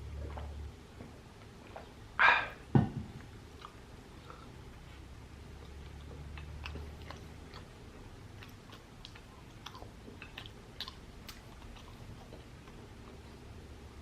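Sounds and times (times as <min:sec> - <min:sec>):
wet chewing: 0:03.3 - 0:14.0.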